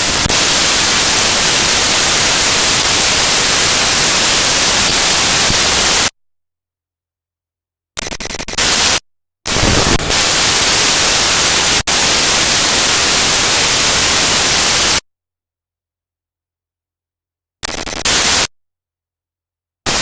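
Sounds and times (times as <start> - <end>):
harsh digital static: 0.0 - 6.1, 8.0 - 15.0, 17.6 - 18.5
loud steady hiss: 0.0 - 6.1, 9.5 - 15.0.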